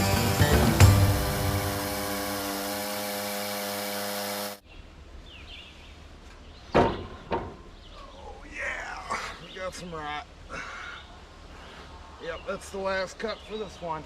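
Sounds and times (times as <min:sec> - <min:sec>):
guitar music: 0:00.0 - 0:02.4.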